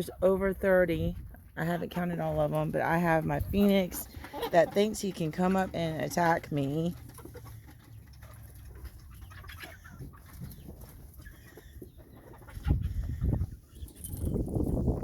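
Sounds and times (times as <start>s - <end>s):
chickens clucking softly: 3.4s - 5.6s, 7.0s - 14.1s.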